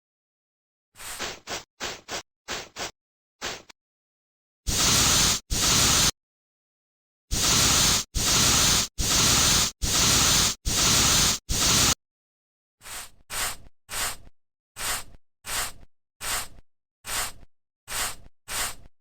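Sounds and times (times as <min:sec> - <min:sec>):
spray can hissing: 0:01.0 - 0:03.6, 0:04.7 - 0:06.1, 0:07.3 - 0:12.0, 0:14.8 - 0:16.5, 0:17.1 - 0:17.3, 0:17.9 - 0:18.8.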